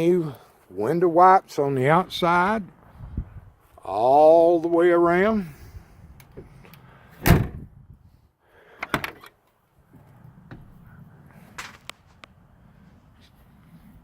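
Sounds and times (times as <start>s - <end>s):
car door shutting thud: 7.2s - 7.7s.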